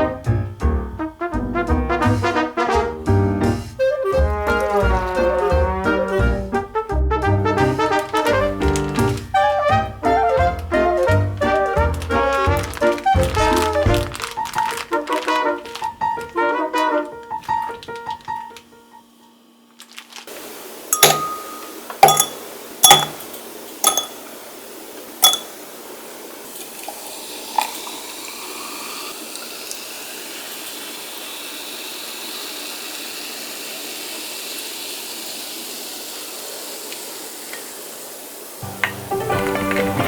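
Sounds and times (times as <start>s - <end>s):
liquid pouring over ice: 7.8s - 9.4s, 10.5s - 16.3s, 21.0s - 24.2s, 25.2s - 25.6s, 26.4s - 33.2s
ice cubes clinking into glass: 20.9s - 24.3s, 25.2s - 25.6s.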